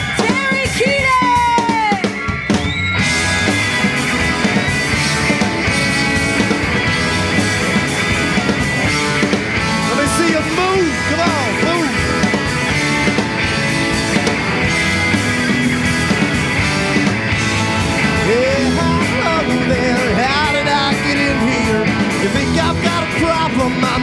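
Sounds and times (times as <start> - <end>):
drums: 0.0 - 24.0
electric guitar: 0.0 - 24.0
live rock band playing: 0.0 - 24.0.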